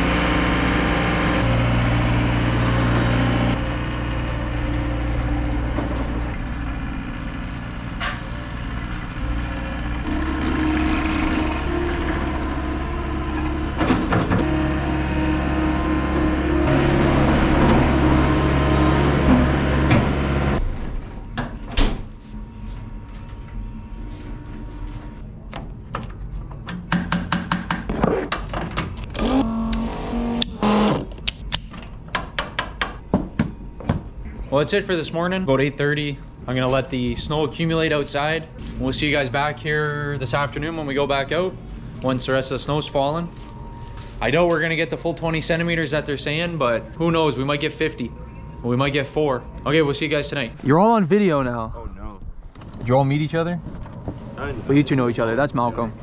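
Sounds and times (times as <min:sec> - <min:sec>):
loader engine revving: 0:00.0 - 0:21.0, 0:29.1 - 0:31.4.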